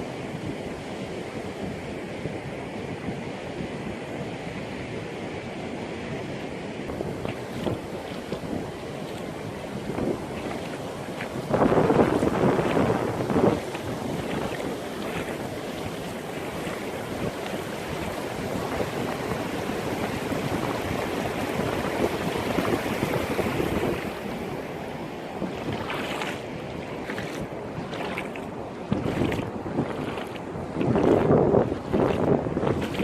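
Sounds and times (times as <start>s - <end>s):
sea waves washing onto shore: 0.0s - 33.0s
sharp water splashes: 6.9s - 24.3s, 25.4s - 33.0s.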